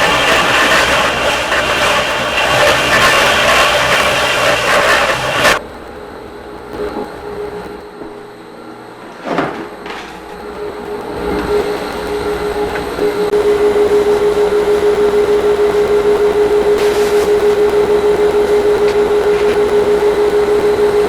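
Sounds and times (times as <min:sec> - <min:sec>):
orbit sander humming: 0:00.0 - 0:21.0.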